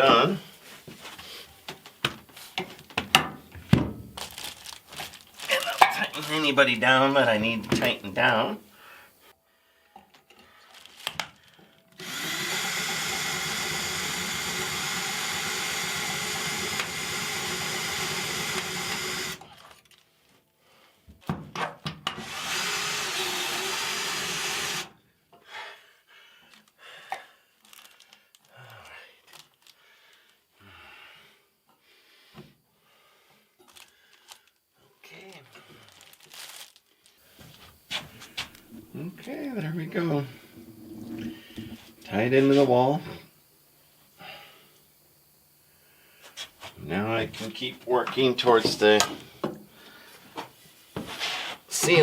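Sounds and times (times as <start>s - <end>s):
power drill driving screws: 11.9s - 19.5s, 22.1s - 24.9s.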